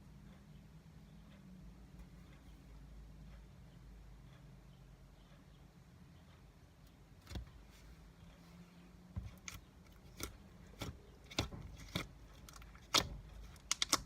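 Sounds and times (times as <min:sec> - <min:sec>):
crisp clicks and snaps: 0:09.4 - 0:14.0.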